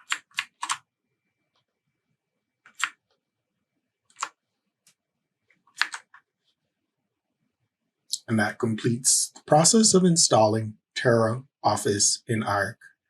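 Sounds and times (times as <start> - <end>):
computer mouse clicking: 0.0 - 0.9, 2.6 - 3.2, 4.1 - 6.3.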